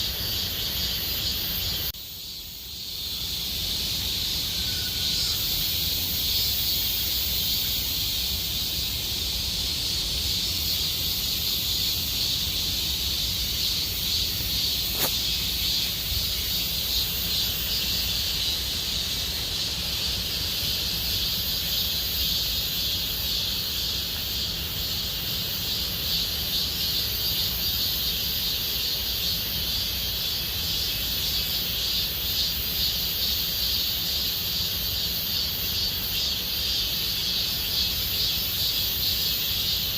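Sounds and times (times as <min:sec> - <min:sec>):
cicadas buzzing: 0:00.0 - 0:39.9
sharp click: 0:14.9 - 0:15.2.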